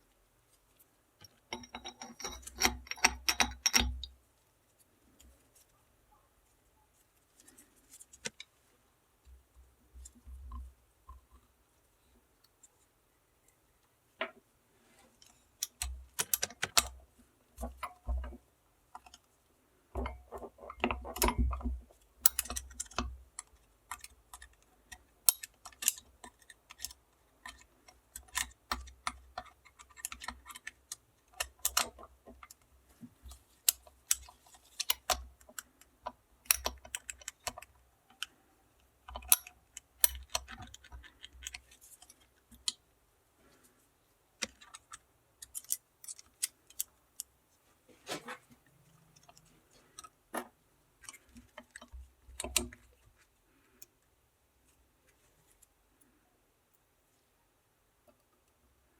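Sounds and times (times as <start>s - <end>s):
metal parts and tools clicking: 1.2s - 4.2s, 15.2s - 17.0s, 20.0s - 42.8s, 44.4s - 47.3s, 48.9s - 53.9s.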